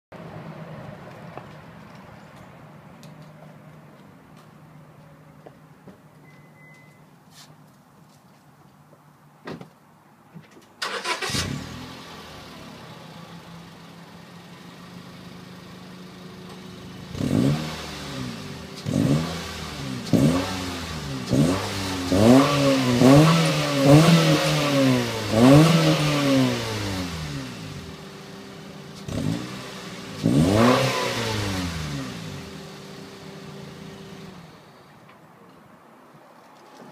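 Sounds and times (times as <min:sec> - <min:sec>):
car engine revving: 0:10.8 - 0:14.6, 0:16.9 - 0:34.8
car engine starting and idling: 0:10.8 - 0:35.1.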